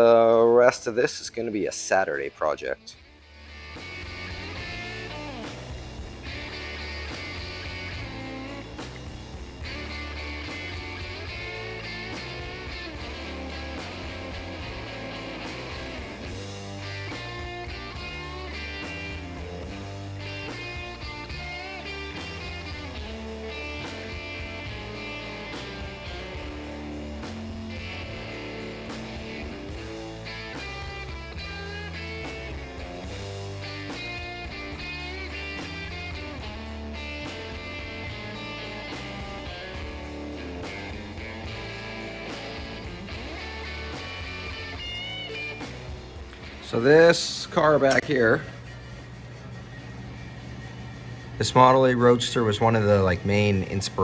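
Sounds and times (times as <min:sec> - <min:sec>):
guitar rock instrumental: 0:00.0 - 0:54.0
repeating bass line: 0:02.3 - 0:48.4.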